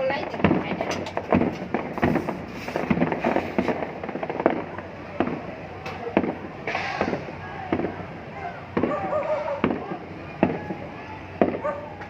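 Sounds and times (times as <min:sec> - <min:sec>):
fireworks bangs and pops: 0:00.0 - 0:12.0.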